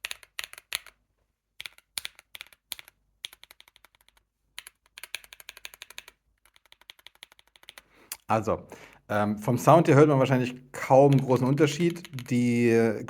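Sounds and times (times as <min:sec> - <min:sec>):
mechanical keyboard typing: 0:01.6 - 0:07.8, 0:10.8 - 0:12.6.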